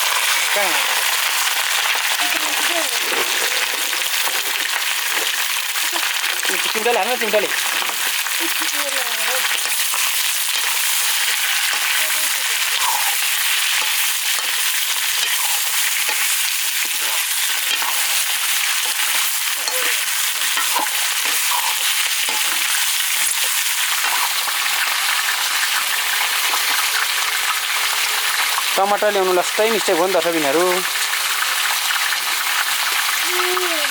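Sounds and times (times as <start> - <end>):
chicken frying in oil: 0.0 - 33.9
stirring scrapes and clinks: 9.5 - 24.4.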